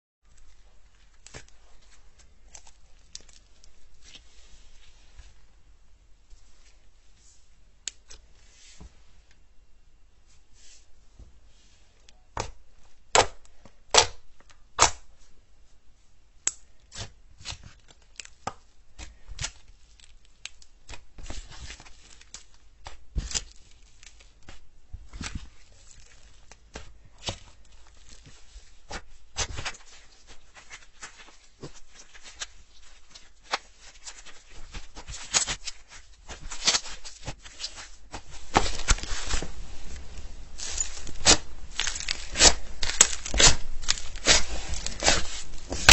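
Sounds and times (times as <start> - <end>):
slime clicking and crackling: 40.6 - 45.9.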